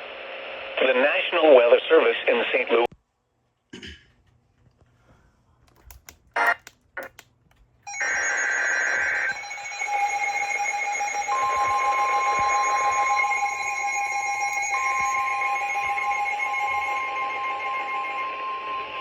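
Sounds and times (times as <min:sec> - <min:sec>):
clicks and short blips: 0:05.8 - 0:07.4
steady electronic alert tones: 0:07.9 - 0:19.0.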